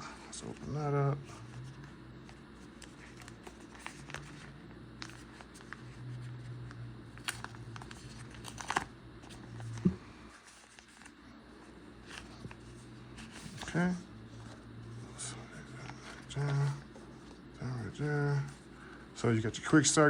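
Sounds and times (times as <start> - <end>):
low hum: 0.0 - 20.0
paper rustling: 0.4 - 6.4, 7.2 - 17.4.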